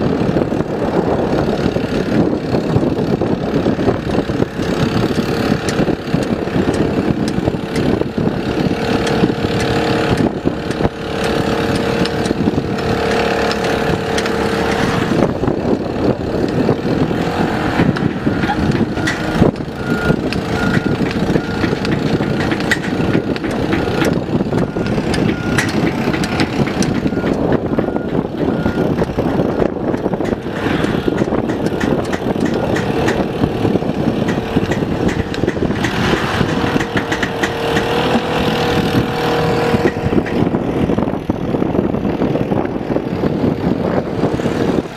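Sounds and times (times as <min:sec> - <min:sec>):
diesel engine running: 0:00.0 - 0:44.9
whining tone: 0:00.0 - 0:44.9
alarm beeping: 0:18.2 - 0:21.8, 0:24.5 - 0:25.8, 0:26.8 - 0:29.9.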